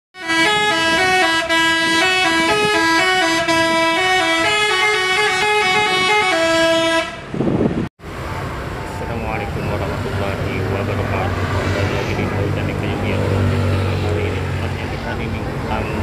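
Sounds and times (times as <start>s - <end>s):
bus horn playing a tune: 0.2s - 7.4s
short rushing noise: 10.4s - 14.0s.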